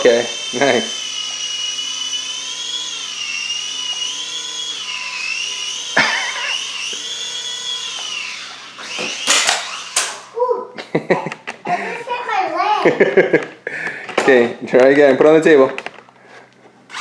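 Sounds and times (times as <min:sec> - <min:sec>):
toy helicopter motors whining: 0:00.0 - 0:10.5.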